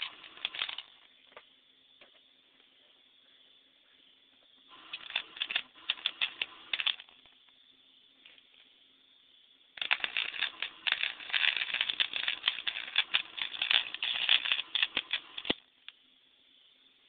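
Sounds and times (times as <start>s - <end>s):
welding arc crackling: 9.8s - 15.6s.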